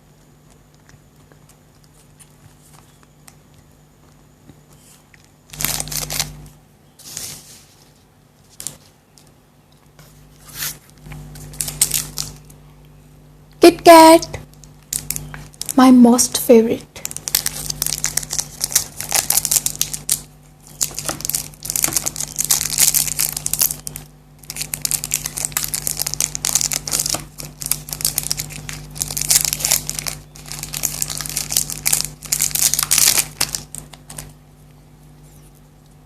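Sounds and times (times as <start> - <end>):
wrapper crinkling and rustling: 4.9 - 9.3, 11.2 - 12.6, 14.0 - 15.8, 17.0 - 34.4.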